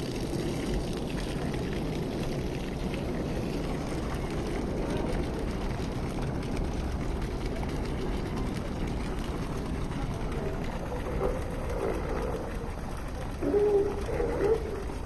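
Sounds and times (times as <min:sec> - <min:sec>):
low rumbling outdoor background noise: 0:00.0 - 0:15.0
faint voices: 0:00.6 - 0:15.0.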